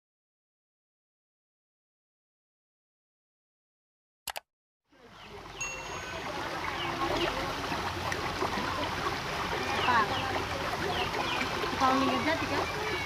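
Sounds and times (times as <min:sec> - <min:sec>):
river water flowing: 0:04.9 - 0:13.0.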